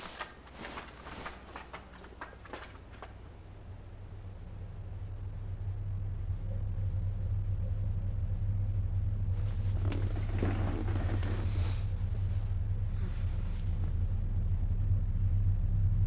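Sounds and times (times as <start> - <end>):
crackly rustling noise: 0.0 - 3.7, 9.3 - 14.2
low rumble: 2.1 - 16.0.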